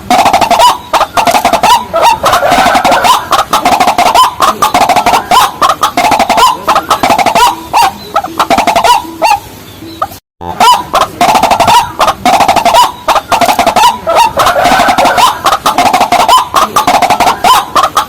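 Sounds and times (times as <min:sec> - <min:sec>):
rapid overlapping waterbird calls: 0:00.0 - 0:18.0.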